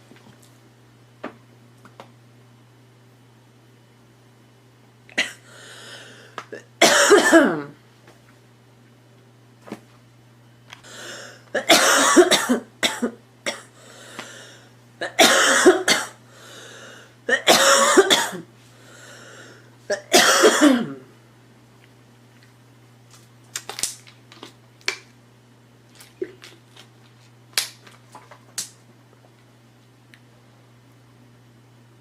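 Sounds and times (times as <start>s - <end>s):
girl coughing: 5.2s - 5.4s, 6.6s - 7.8s, 11.6s - 13.7s, 15.0s - 16.2s, 17.3s - 18.5s, 19.9s - 21.1s
breaths: 5.4s - 6.5s, 10.8s - 11.5s, 13.7s - 14.8s, 16.2s - 17.2s, 18.6s - 19.7s.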